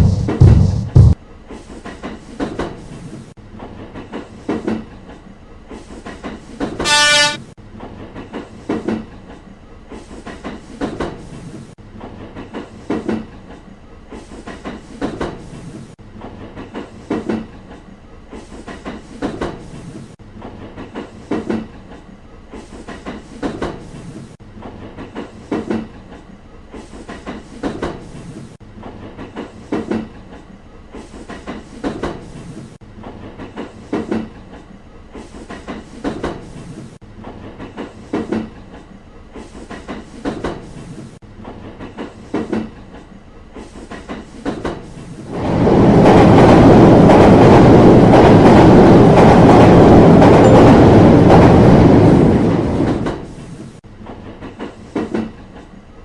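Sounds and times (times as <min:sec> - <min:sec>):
train wheels clacking on rails: 0:00.0 - 0:55.9
train horn blast: 0:06.8 - 0:07.6.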